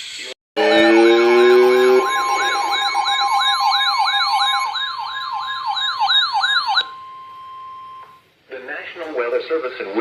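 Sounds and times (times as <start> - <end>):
electronic siren yelps: 0.6 - 8.2
steady alarm tone: 0.6 - 8.3.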